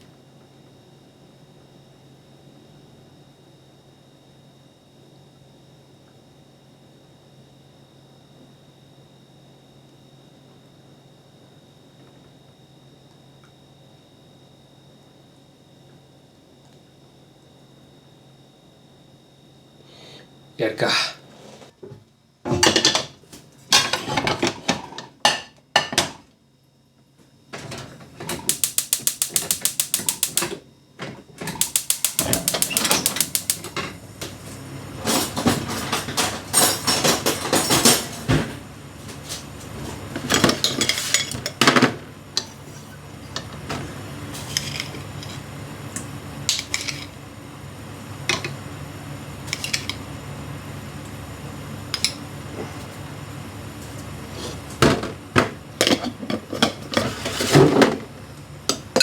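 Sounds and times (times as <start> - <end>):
utensils and cookware clattering: 23.7 - 26.2, 31.5 - 34.0, 35.0 - 38.5, 40.2 - 43.5, 44.4 - 45.4, 46.5 - 47.2, 49.5 - 50.0, 55.8 - 58.0
rapid even clicking: 28.5 - 30.5, 31.6 - 33.7.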